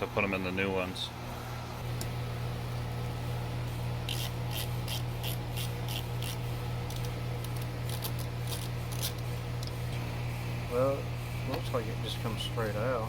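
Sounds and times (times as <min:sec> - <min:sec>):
steady low hum: 0:00.0 - 0:13.0
screwdriver scratchy strokes: 0:04.1 - 0:09.3.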